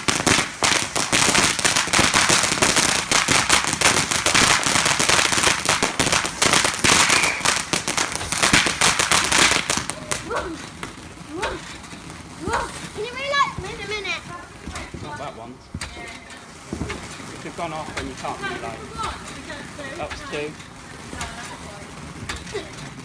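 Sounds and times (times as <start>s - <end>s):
fireworks crackling and popping: 0.0s - 23.0s.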